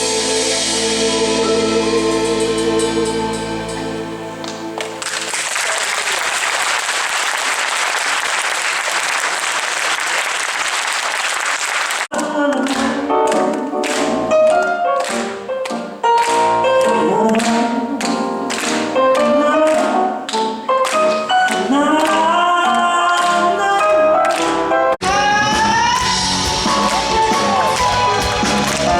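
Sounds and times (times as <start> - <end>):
audience applauding: 4.4 - 24.7, 25.6 - 28.9
person singing: 12.1 - 14.7, 16.7 - 20.3, 21.5 - 24.4, 25.0 - 28.9
rhythmic accompaniment with beats: 24.2 - 28.9.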